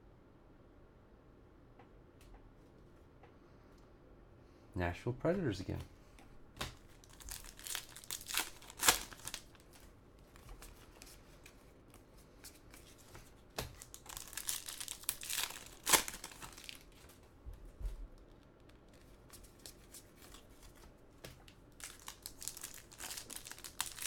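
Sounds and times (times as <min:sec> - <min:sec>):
card pack wrappers crinkling: 0:06.6 - 0:17.3, 0:18.2 - 0:24.0.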